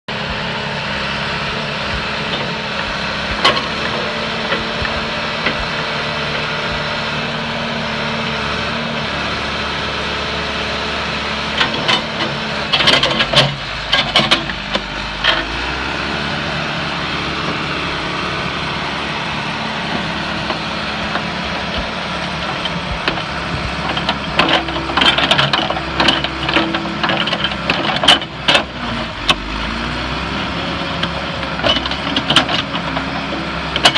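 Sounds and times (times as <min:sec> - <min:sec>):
backhoe engine running: 0:00.1 - 0:33.9
sharp clanks and knocks: 0:03.3 - 0:06.8, 0:11.6 - 0:15.6, 0:19.9 - 0:29.5, 0:31.0 - 0:33.9.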